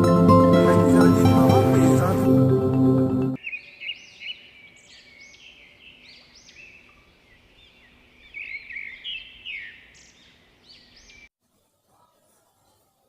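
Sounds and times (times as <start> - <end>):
birdsong chirps and trills: 3.4 - 11.3.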